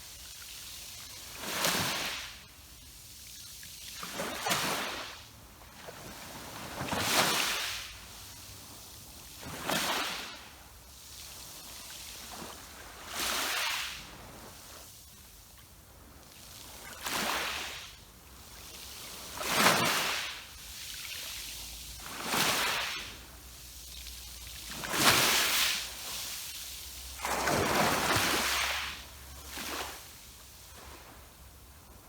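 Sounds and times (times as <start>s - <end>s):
sea waves breaking on rocks: 24.7s - 30.1s.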